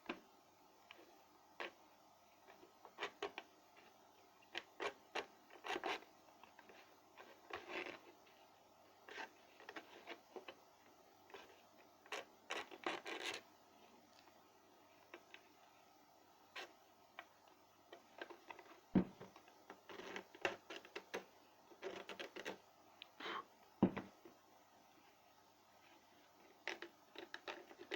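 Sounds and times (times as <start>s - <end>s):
clicks and knocks on a kettle: 23.8s - 24.1s.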